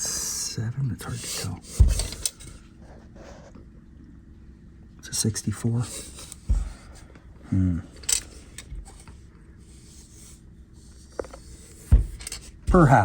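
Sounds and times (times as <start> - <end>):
helmet knocks and scrapes: 1.6 - 2.6, 11.0 - 13.0.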